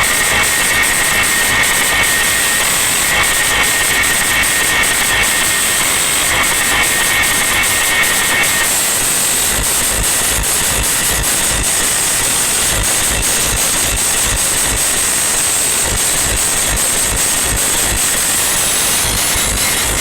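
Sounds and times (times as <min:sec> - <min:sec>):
distorted sound system roar: 0:00.0 - 0:20.0.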